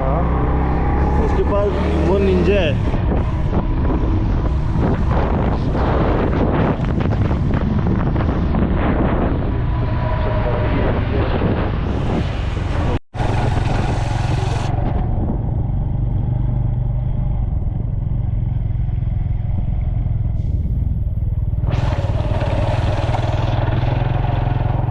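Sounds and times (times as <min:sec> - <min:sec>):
road and wind noise: 0:00.0 - 0:24.9
motorcycle engine running: 0:13.1 - 0:24.9.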